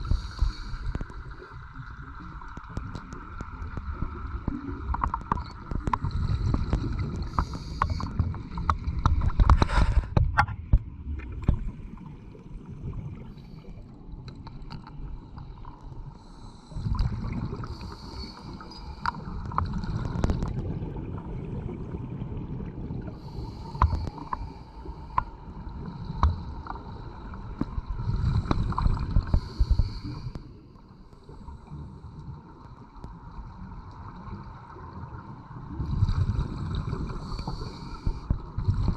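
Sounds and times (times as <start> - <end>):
underwater bubbles gurgling: 0.0 - 38.9.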